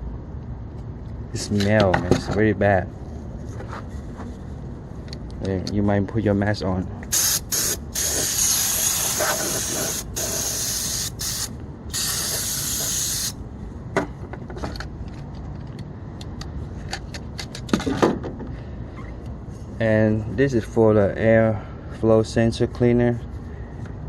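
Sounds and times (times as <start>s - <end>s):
aerosol can spraying: 7.1s - 13.4s.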